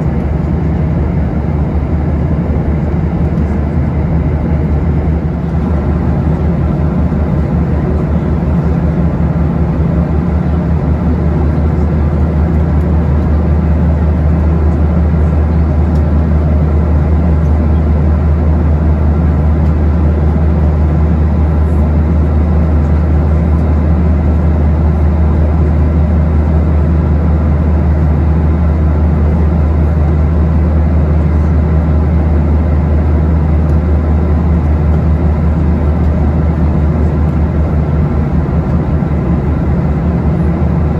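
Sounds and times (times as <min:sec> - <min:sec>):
airflow rushing over fuselage: 0:00.0 - 0:40.9
airplane cabin engine drone: 0:00.0 - 0:40.9.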